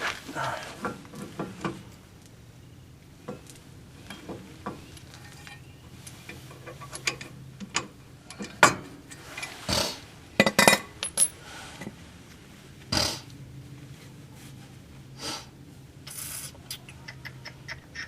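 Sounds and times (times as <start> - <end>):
metal tools clinking: 5.1 - 5.7, 10.6 - 11.4
scraping rustle: 9.1 - 10.2.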